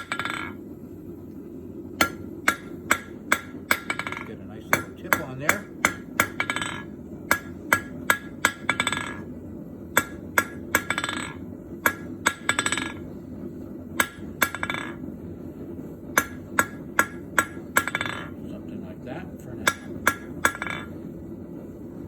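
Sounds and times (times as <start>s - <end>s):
hammer striking metal on anvil: 0.0s - 0.6s, 2.0s - 9.2s, 10.0s - 13.1s, 14.0s - 15.0s, 16.2s - 18.4s, 19.6s - 21.0s.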